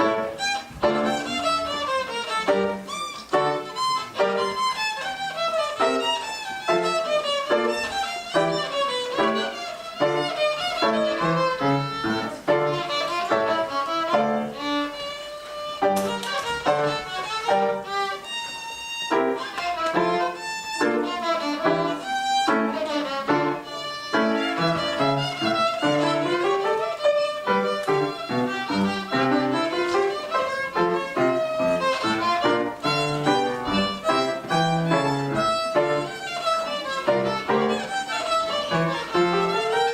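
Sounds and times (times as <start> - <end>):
lower accompanying notes: 0.0 - 16.2
violin playing fast passages: 0.0 - 39.9.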